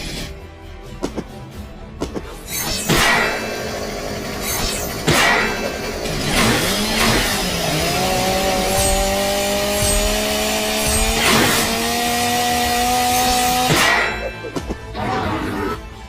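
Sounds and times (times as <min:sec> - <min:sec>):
motor revving drone: 0:03.4 - 0:13.7
sharp swishing hits: 0:04.4 - 0:14.4.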